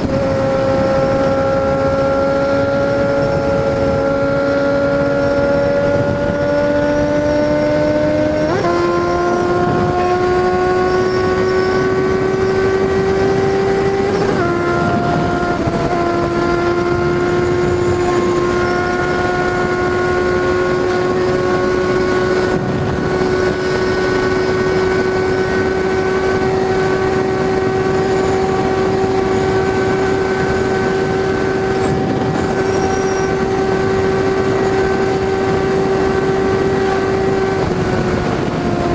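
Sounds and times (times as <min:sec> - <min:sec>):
motorcycle engine running: 0:00.0 - 0:38.9
wind rush: 0:00.0 - 0:38.9.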